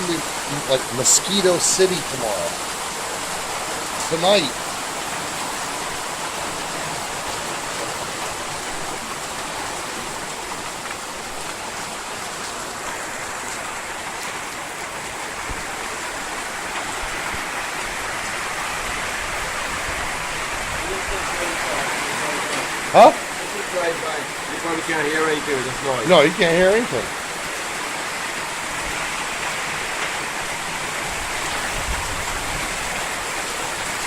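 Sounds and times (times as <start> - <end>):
heavy rain pounding: 0.0 - 34.0.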